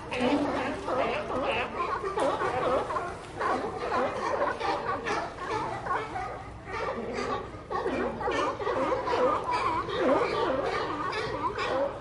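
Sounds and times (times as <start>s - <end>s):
sea lions barking: 0.0s - 12.0s.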